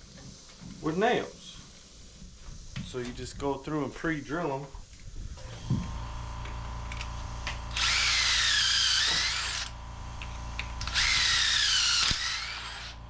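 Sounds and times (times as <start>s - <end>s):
drill motor whining into wood: 5.4s - 13.0s.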